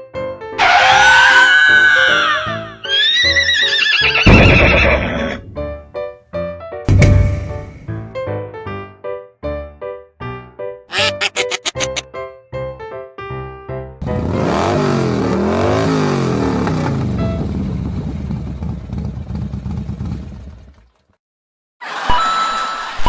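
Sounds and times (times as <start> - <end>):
short harsh calls: 10.9 - 12.0.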